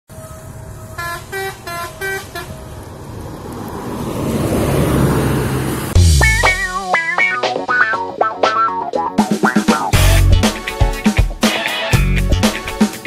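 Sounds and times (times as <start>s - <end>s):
bus horn playing a quick tune: 0.1s - 2.8s
engine and road noise: 0.1s - 7.8s.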